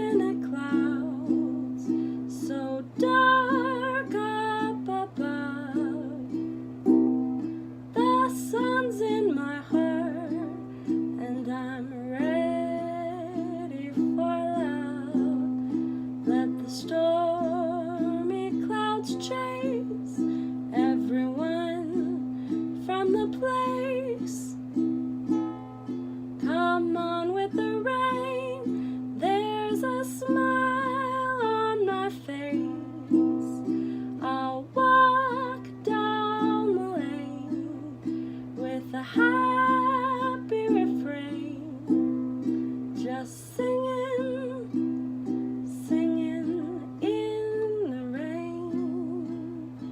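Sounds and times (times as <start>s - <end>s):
person singing with vibrato: 0.0s - 6.5s, 26.4s - 49.9s
strummed stringed instrument: 0.0s - 49.9s.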